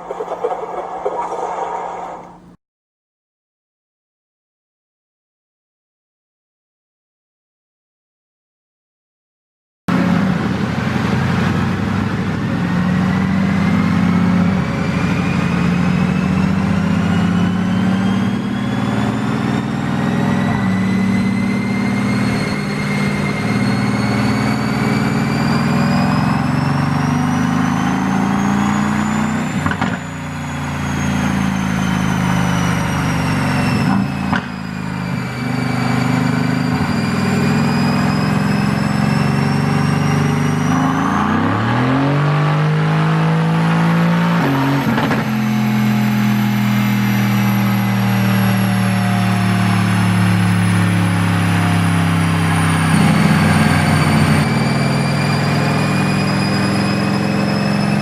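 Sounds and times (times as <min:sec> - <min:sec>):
car engine under load: 0:00.0 - 0:02.6
high whine climbing in pitch: 0:00.0 - 0:02.6, 0:31.0 - 0:40.8, 0:45.3 - 0:58.0.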